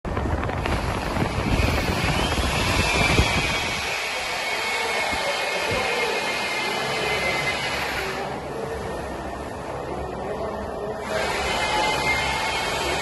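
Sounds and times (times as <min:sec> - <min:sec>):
lathe running: 0:00.6 - 0:08.6, 0:11.0 - 0:13.0.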